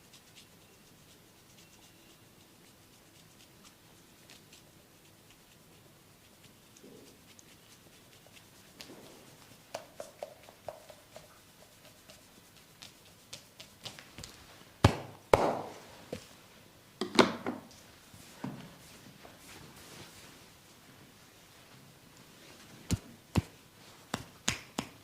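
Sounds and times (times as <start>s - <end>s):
hands patting skin: 2.6s - 16.4s, 22.9s - 25.0s
sharp hits on skin: 14.8s - 15.8s.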